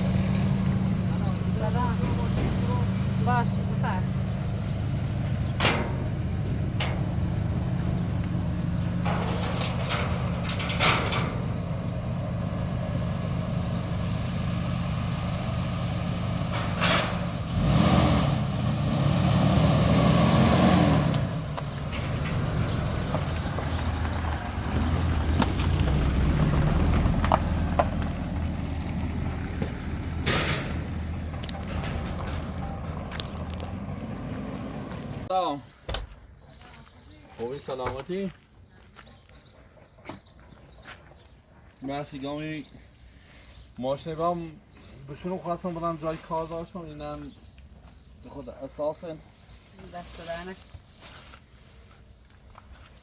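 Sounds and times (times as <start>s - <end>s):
vehicle engine humming: 0.0s - 35.3s.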